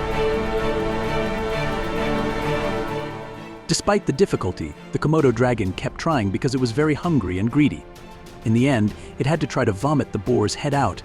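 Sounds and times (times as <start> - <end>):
orchestral background music: 0.0 - 11.0.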